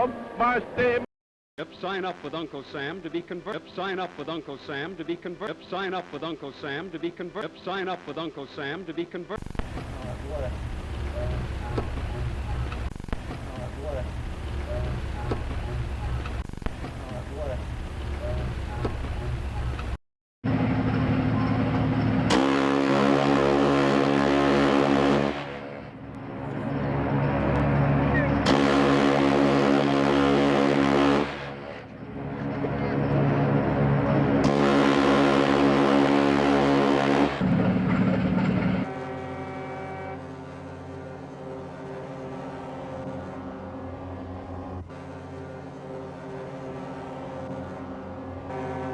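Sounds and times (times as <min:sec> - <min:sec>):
ship's horn blowing: 0:22.3 - 0:26.0, 0:27.4 - 0:31.7, 0:33.4 - 0:37.6, 0:38.6 - 0:48.9.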